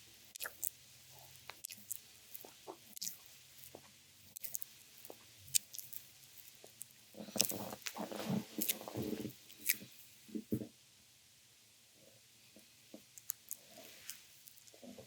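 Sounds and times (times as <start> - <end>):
stomach gurgling: 0.3 - 10.7
wet skin squelching: 1.4 - 9.9.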